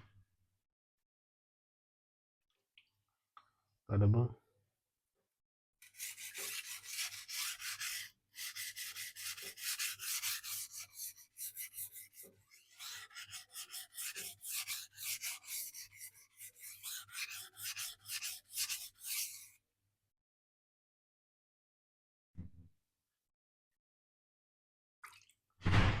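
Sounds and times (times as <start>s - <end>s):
knife scraping on sharpening stone: 5.8s - 19.6s.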